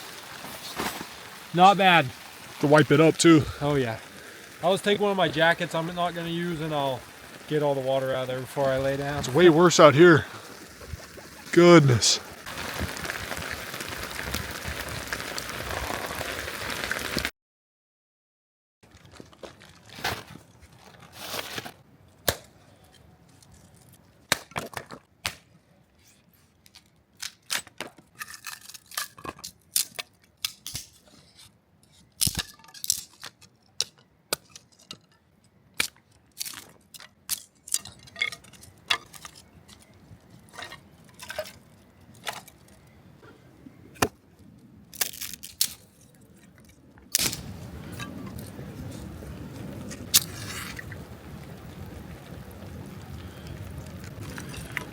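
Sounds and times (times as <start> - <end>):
heavy rain hiss: 0.0 - 17.3, 47.2 - 54.9.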